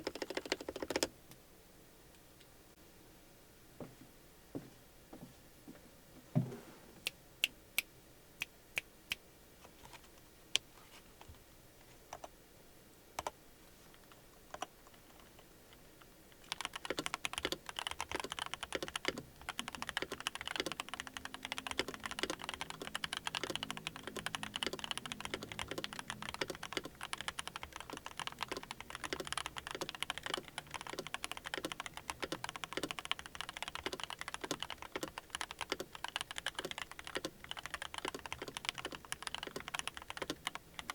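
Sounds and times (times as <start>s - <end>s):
mechanical keyboard typing: 0.0s - 1.1s, 14.5s - 15.4s, 16.4s - 40.9s.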